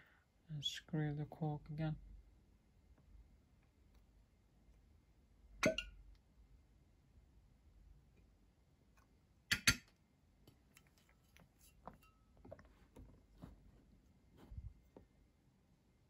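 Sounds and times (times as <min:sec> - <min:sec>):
glass clinking: 0:11.9 - 0:12.6.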